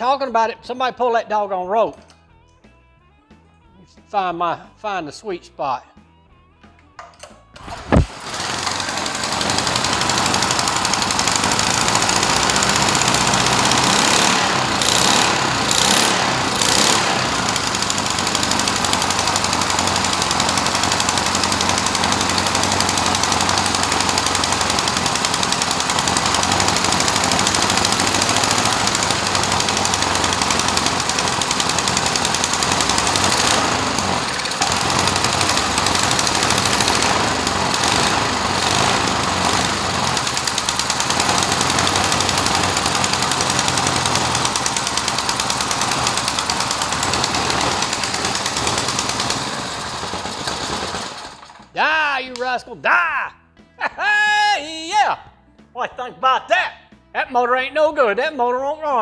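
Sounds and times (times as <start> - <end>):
small engine running: 7.5 - 51.8.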